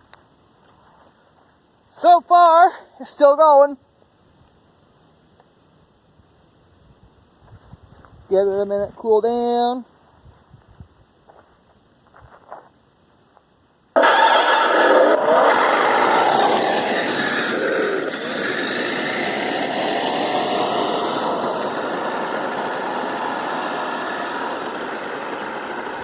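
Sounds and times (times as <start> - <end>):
toy car electric motor whining: 14.0 - 26.0.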